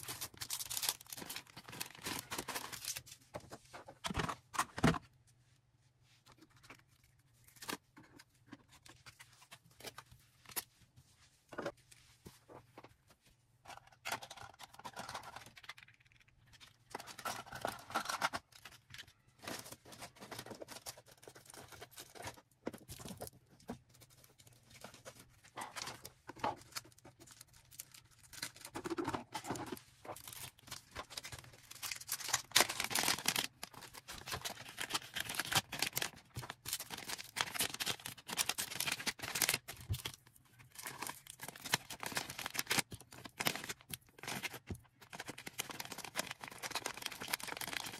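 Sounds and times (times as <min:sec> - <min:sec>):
plastic packaging rustling and tearing: 0:00.0 - 0:03.2, 0:13.7 - 0:47.9.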